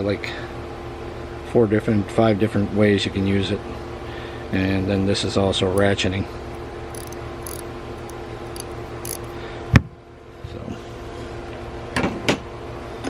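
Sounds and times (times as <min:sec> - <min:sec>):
steady background hum: 0:00.0 - 0:13.0
tool clicks: 0:06.9 - 0:09.4.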